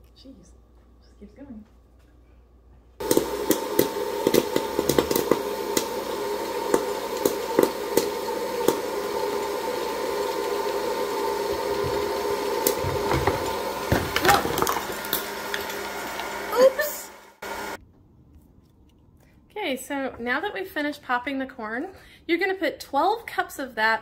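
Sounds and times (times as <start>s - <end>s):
popcorn kernels popping: 3.0s - 16.5s
popcorn popper fan hum: 3.0s - 17.8s.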